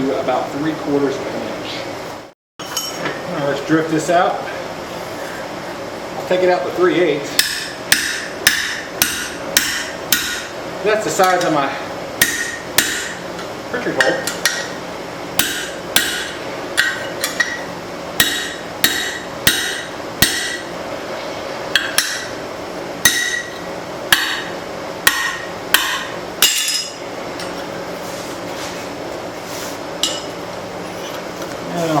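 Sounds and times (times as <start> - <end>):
hammer striking steel on anvil: 7.4 - 10.5, 12.2 - 13.2, 14.0 - 14.7, 15.4 - 17.6, 18.2 - 20.7, 21.8 - 22.3, 23.0 - 27.5, 30.0 - 30.4.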